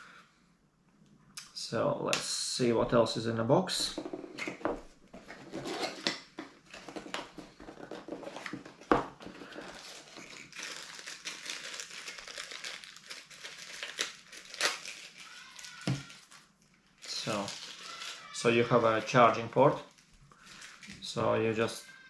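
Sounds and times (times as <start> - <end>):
packaging crinkling: 6.6 - 21.1.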